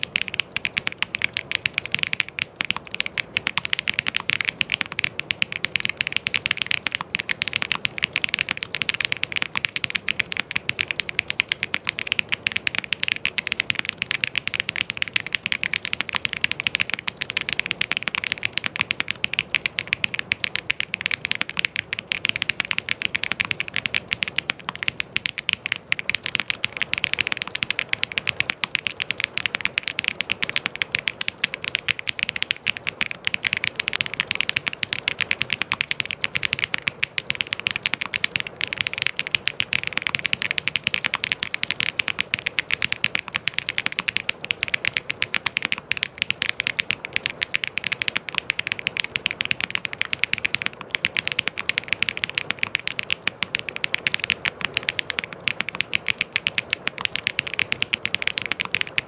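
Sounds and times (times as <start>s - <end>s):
fast typing on mechanical keyboard: 0.0s - 59.0s.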